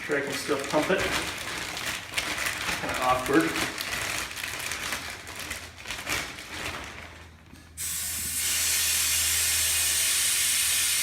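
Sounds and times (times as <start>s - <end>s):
gas hissing from tank: 7.8s - 11.0s.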